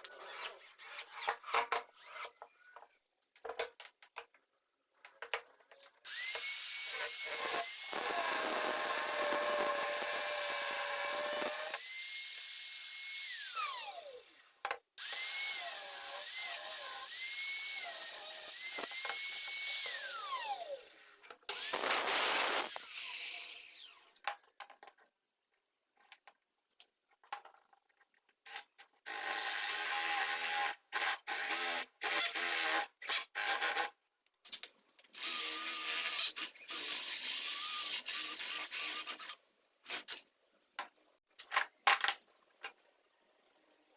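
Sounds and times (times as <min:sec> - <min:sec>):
electric hand drill whining: 0:06.1 - 0:24.2, 0:35.2 - 0:39.4.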